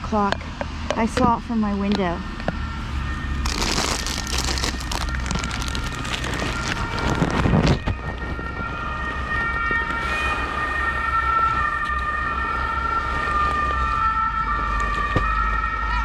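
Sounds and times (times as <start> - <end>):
emergency vehicle siren: 2.3 - 16.0
loud rustle: 3.4 - 7.6.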